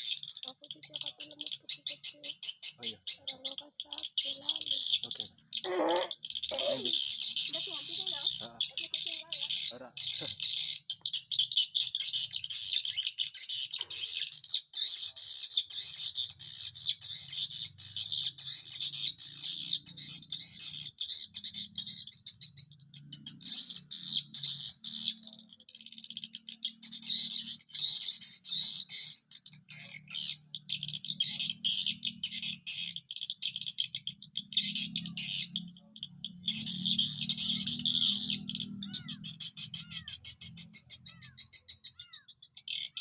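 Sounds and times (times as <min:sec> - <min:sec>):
swiftlets twittering: 0:02.8 - 0:11.0.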